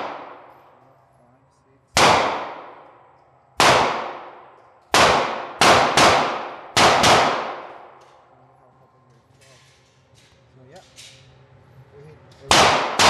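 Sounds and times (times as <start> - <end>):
gunshots with echo: 0.0 - 0.6, 1.9 - 3.0, 3.6 - 8.0, 12.5 - 13.0.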